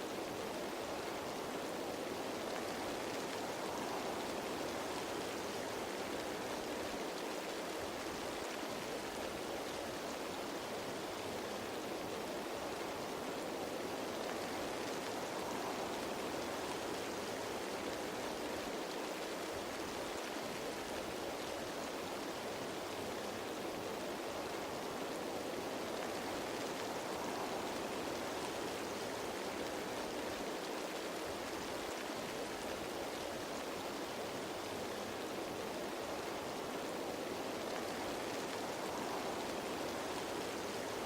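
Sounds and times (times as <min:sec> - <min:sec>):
rain falling on leaves: 0:00.0 - 0:41.0.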